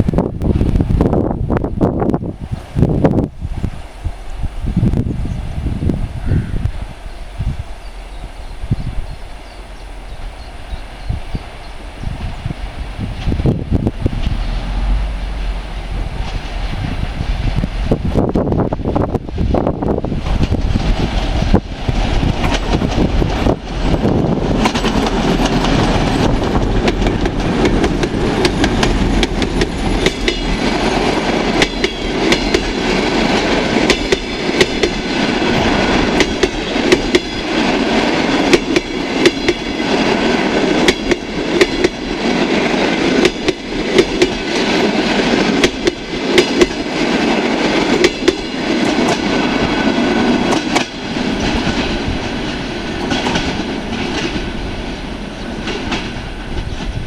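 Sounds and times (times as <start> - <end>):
train rumble: 0.0 - 57.0
train wheels clicking over rail joints: 13.1 - 54.6, 55.5 - 57.0.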